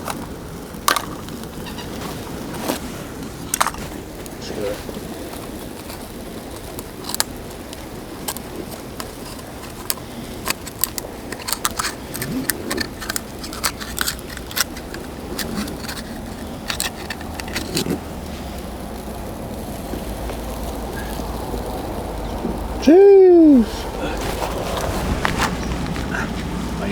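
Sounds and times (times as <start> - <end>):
hard objects clacking together: 0.0 - 1.7, 3.4 - 4.0, 4.9 - 18.3
steady background hiss: 0.0 - 26.9.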